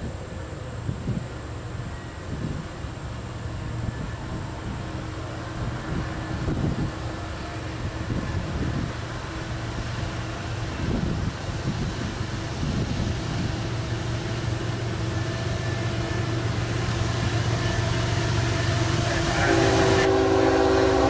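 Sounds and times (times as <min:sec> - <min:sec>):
locomotive engine rumble: 0:00.1 - 0:21.0
train air horn chord: 0:19.1 - 0:21.0.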